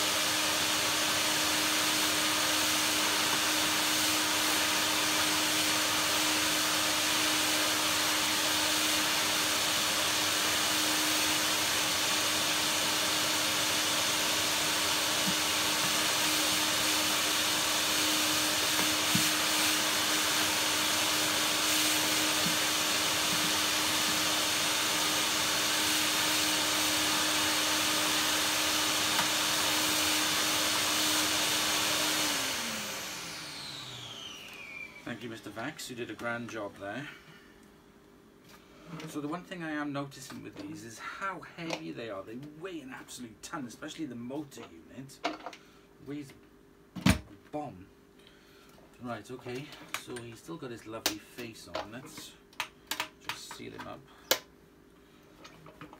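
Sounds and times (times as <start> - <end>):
vacuum cleaner running: 0.0 - 35.8
motor winding down whine: 31.0 - 35.1.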